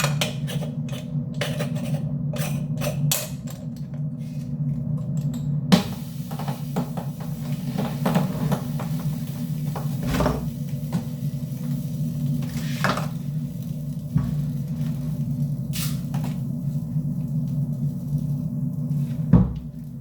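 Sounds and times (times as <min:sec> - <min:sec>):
dishes and utensils clattering: 0:00.0 - 0:03.8
steady low hum: 0:00.0 - 0:20.0.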